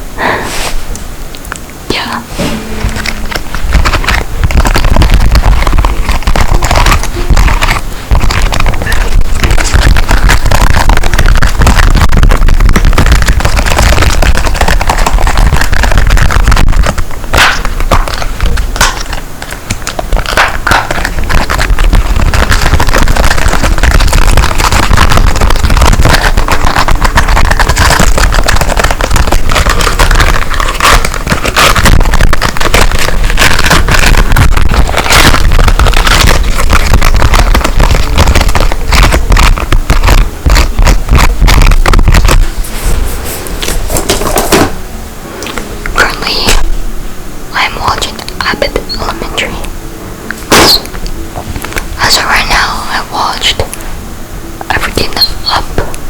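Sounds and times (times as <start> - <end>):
objects rubbed against microphone: 2.0 - 44.6, 54.8 - 55.7.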